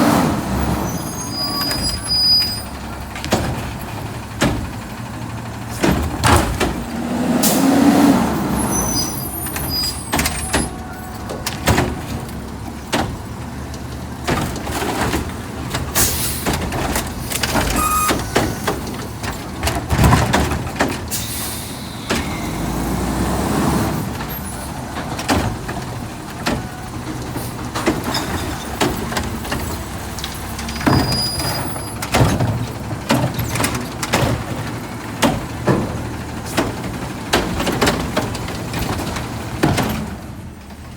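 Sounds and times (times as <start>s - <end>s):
truck engine running: 0.0s - 40.9s
metallic clanks and knocks: 3.1s - 7.0s, 9.4s - 21.2s, 24.1s - 40.8s
air brake hiss: 21.1s - 22.5s.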